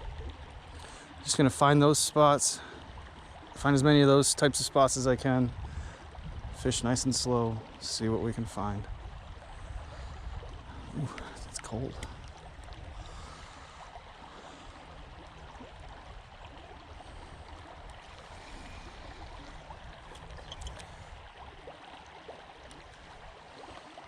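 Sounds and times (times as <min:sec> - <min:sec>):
creek water running: 0:00.0 - 0:24.0.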